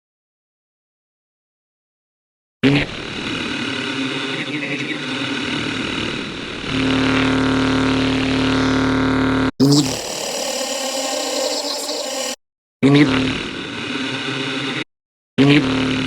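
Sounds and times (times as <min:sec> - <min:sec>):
buzzing droning stretched voice: 0:09.6 - 0:12.4.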